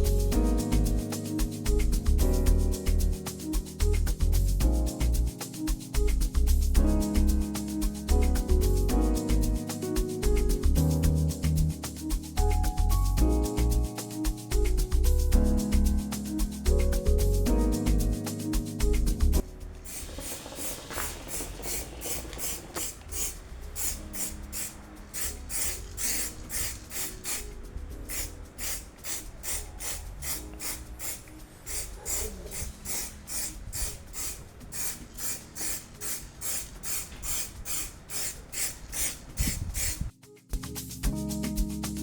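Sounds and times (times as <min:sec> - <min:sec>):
music playing: 0:00.0 - 0:36.5, 0:39.4 - 0:42.0
brush scrubbing engine casing: 0:19.8 - 0:40.1.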